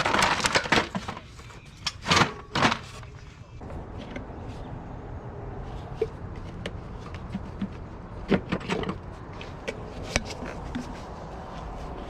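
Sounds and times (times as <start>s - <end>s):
car engine rumble: 3.2s - 12.0s.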